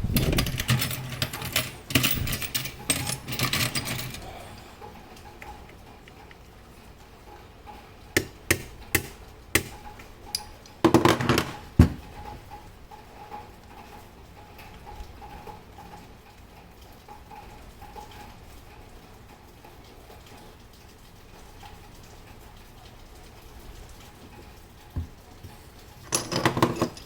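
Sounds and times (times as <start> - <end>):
metal parts rattling: 0.0 - 4.4, 26.0 - 27.0.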